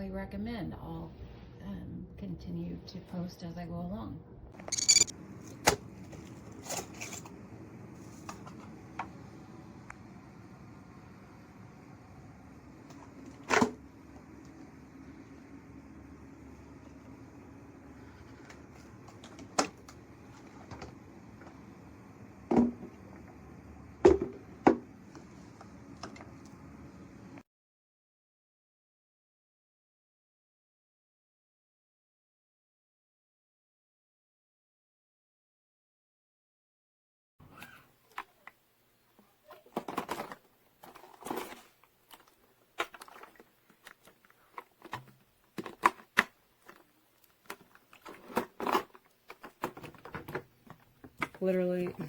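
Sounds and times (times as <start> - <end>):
objects clicking and tapping: 4.6 - 5.1.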